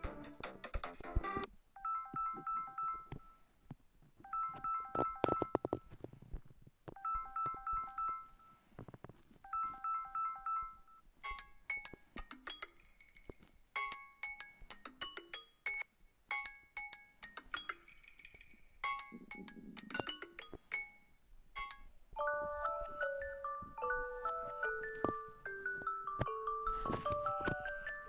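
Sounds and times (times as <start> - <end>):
beeping ringtone: 1.8 - 3.4, 4.3 - 5.8, 7.0 - 8.6, 9.5 - 11.0, 21.6 - 28.0
bell-like ringtone: 1.8 - 3.4, 4.3 - 5.6, 21.6 - 28.0.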